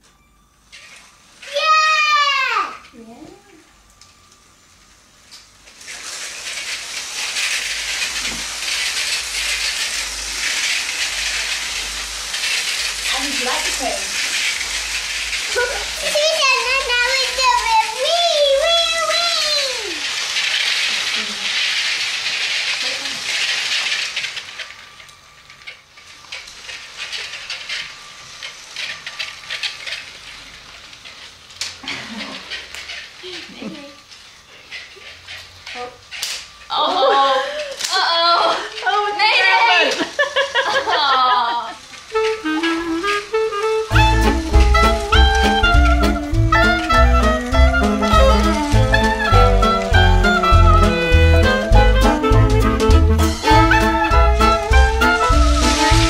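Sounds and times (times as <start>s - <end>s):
faint steady whine: 0.0s - 20.2s
toy train motor running on track: 0.6s - 56.0s.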